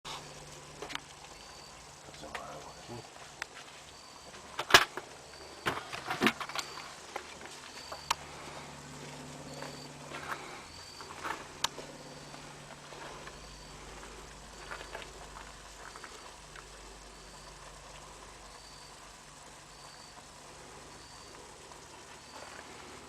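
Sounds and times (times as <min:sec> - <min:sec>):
faint high chirp: 0:01.2 - 0:03.2, 0:03.8 - 0:04.5, 0:07.6 - 0:08.2, 0:09.3 - 0:12.6, 0:13.2 - 0:22.8.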